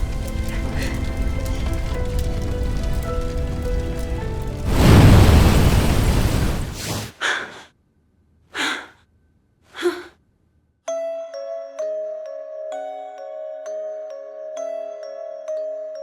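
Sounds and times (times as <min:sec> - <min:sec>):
woman gasping for breath: 0:00.5 - 0:01.1, 0:07.2 - 0:07.7, 0:08.6 - 0:09.0, 0:09.8 - 0:10.1
loud rushing noise: 0:04.6 - 0:07.2.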